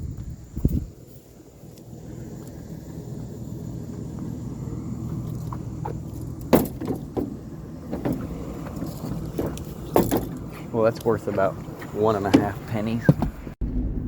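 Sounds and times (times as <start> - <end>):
pickup truck engine idling: 1.1 - 14.0
sharp clunks: 5.8 - 10.7, 11.8 - 13.5.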